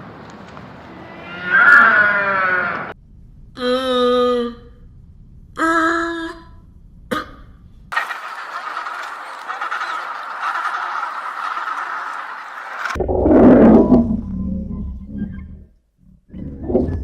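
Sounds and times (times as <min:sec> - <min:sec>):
poultry flock calling: 0:08.0 - 0:13.0.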